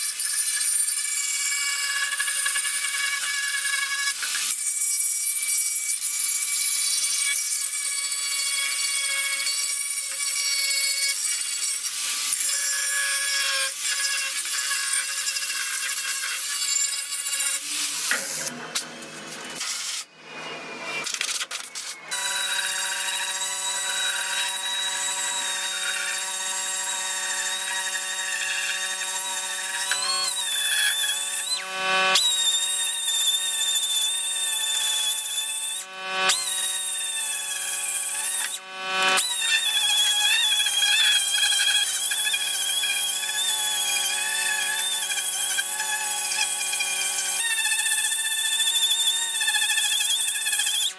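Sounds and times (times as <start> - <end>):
power tool whining and grinding: 21.6 - 50.9.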